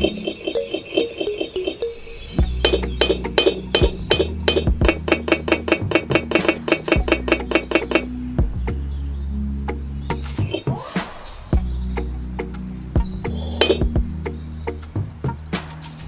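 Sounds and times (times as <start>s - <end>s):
steady low hum: 2.3s - 10.6s
rapid hard clicking: 2.6s - 8.1s.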